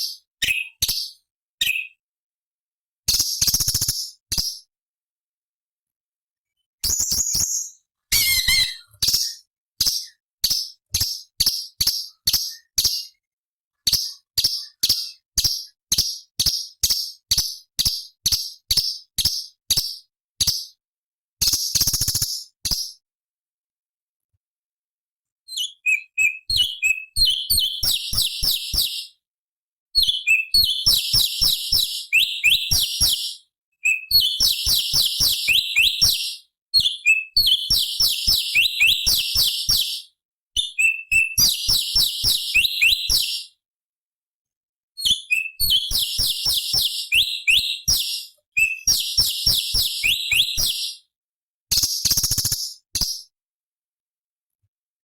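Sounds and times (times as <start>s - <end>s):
bird singing sharp chirps and trills: 0.0s - 2.0s, 6.8s - 20.8s, 25.5s - 29.2s, 30.0s - 43.6s, 45.0s - 51.1s.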